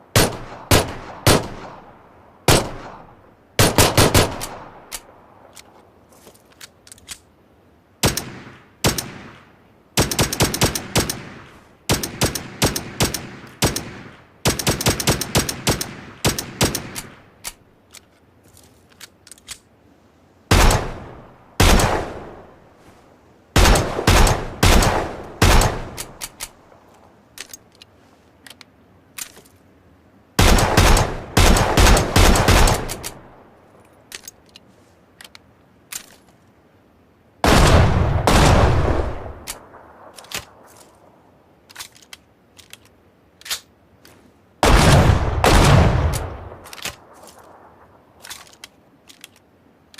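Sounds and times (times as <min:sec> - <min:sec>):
single gunshots: 0:00.1 - 0:01.9, 0:02.5 - 0:05.1, 0:08.0 - 0:17.3, 0:20.5 - 0:22.5, 0:23.6 - 0:26.5, 0:30.4 - 0:33.4, 0:37.4 - 0:40.7, 0:44.6 - 0:47.8
automatic gunfire bursts: 0:03.6 - 0:04.6, 0:21.6 - 0:22.4, 0:23.6 - 0:26.4, 0:30.4 - 0:33.2.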